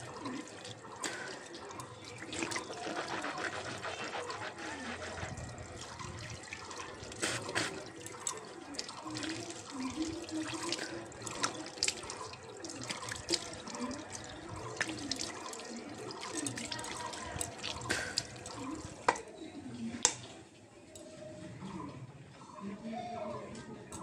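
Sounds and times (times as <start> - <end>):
person hawking and rinsing: 0.0 - 19.2
tap water running into sink: 0.0 - 19.2.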